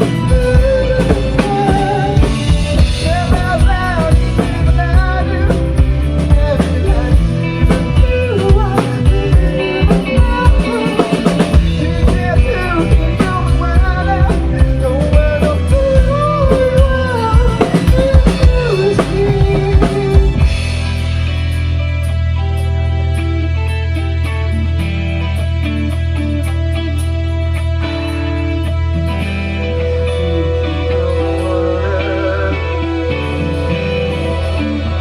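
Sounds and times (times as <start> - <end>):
drum kit beat: 0.0 - 29.5
guitar: 0.0 - 35.0
wavering sung melody: 29.3 - 35.0.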